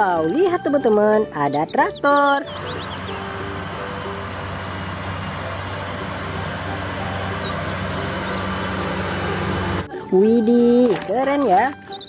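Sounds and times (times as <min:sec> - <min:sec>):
tractor engine drone: 0:00.0 - 0:11.7.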